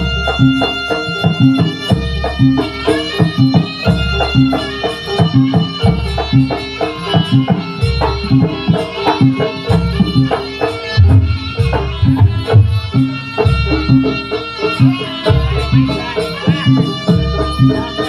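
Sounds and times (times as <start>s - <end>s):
quick hand-drum strokes: 0.0s - 18.0s
reedy melody line: 0.0s - 18.0s.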